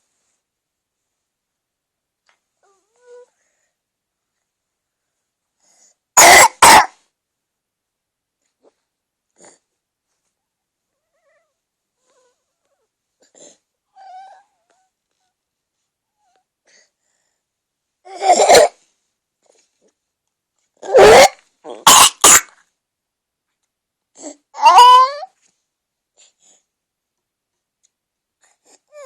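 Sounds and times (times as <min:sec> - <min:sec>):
person coughing: 0:06.2 - 0:06.9, 0:20.9 - 0:22.6.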